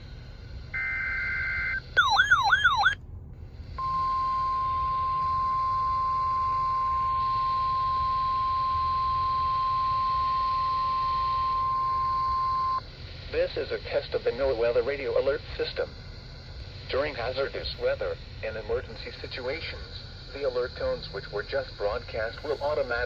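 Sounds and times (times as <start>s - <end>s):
digital data burst tones: 0.8s - 3.0s
steady high alarm tone: 0.8s - 3.0s
warbling siren-like tone: 0.8s - 3.0s.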